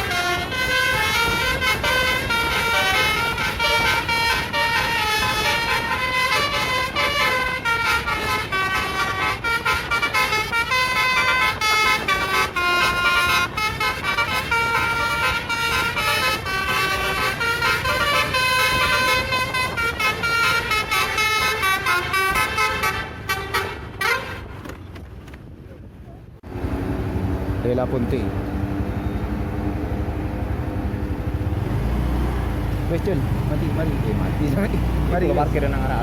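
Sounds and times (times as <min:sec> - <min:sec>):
bus horn playing a fast tune: 0:00.0 - 0:24.6, 0:28.9 - 0:31.6.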